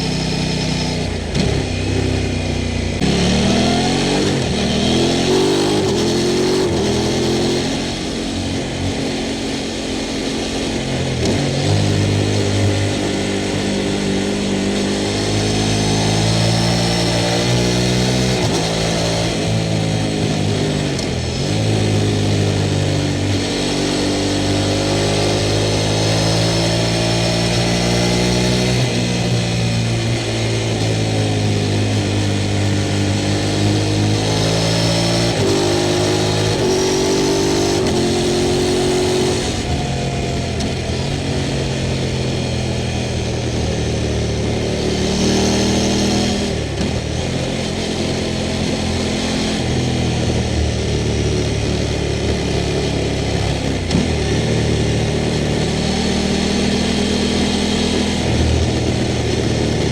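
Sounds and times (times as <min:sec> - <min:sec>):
motorcycle engine shifting gears: 0:00.0 - 0:59.9.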